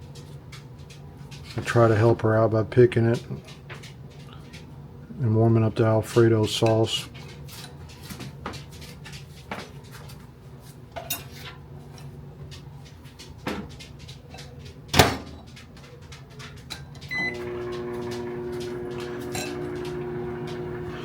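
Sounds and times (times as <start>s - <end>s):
microwave oven humming: 16.9s - 21.0s.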